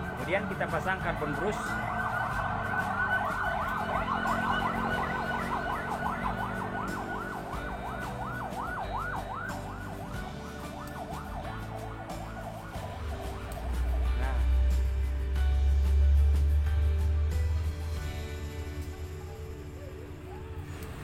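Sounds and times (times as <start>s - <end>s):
siren-like warbling tone: 0.0s - 14.4s.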